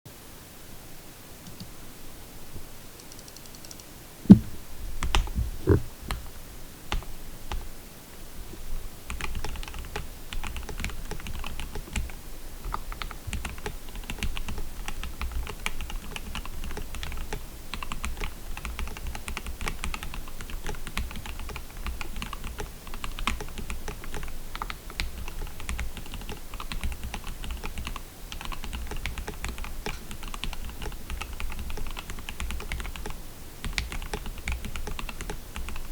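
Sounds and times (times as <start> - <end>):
faint microphone hiss: 0.1 - 35.9
loud low thump: 4.3 - 4.6
mechanical keyboard typing: 25.7 - 35.8.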